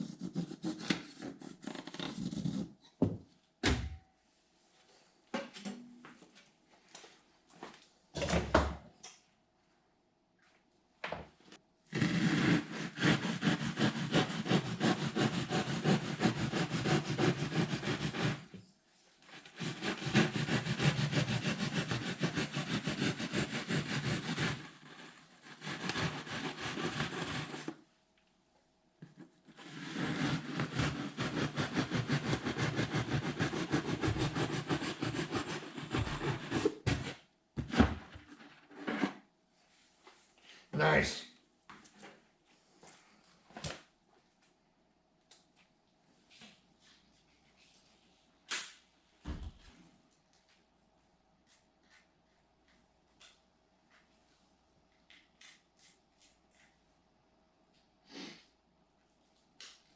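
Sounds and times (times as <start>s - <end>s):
saw cutting duct: 11.9s - 18.6s, 19.3s - 27.8s, 29.6s - 37.2s.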